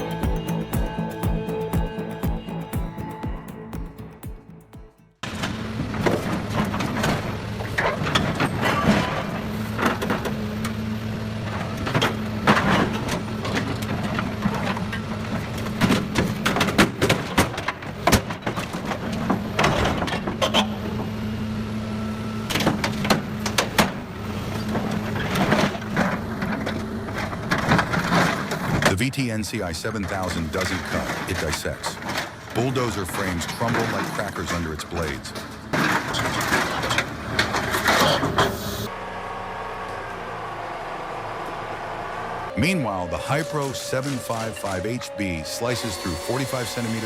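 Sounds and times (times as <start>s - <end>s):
diesel engine running: 0.0s - 16.2s, 37.1s - 47.0s.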